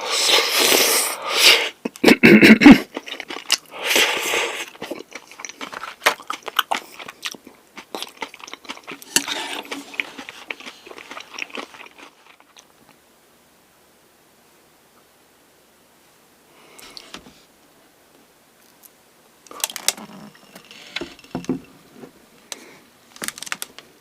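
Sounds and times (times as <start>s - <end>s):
crunchy bites and wet chewing: 2.8s - 12.8s.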